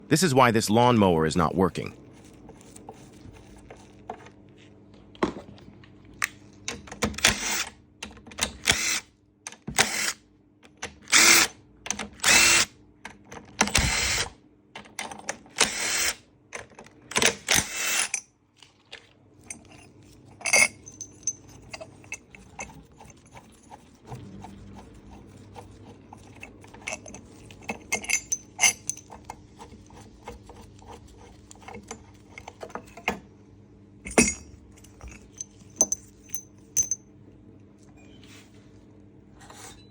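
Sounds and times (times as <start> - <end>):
metallic clinks and taps: 19.5 - 22.8, 26.8 - 29.2, 34.1 - 37.0.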